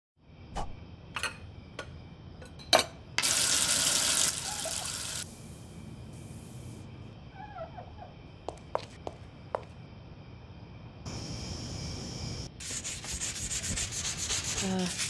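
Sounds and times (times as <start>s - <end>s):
tap water running into sink: 3.2s - 5.2s.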